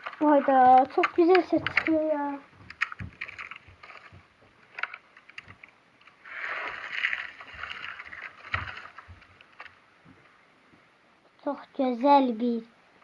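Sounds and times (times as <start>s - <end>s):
slime squishing and crackling: 0.0s - 9.8s.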